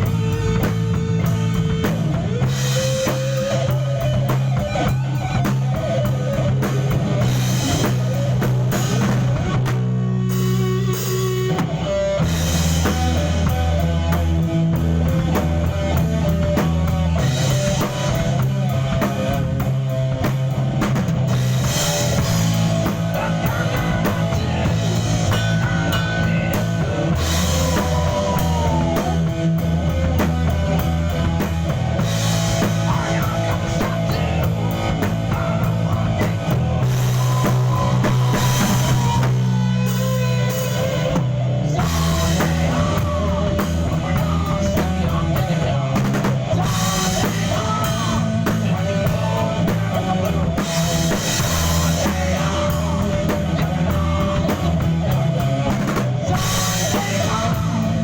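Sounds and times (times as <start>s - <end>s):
guitar melody: 0.0s - 44.1s
bass line: 0.0s - 58.0s
drum kit: 0.0s - 58.0s
rock band playing live: 0.0s - 58.0s.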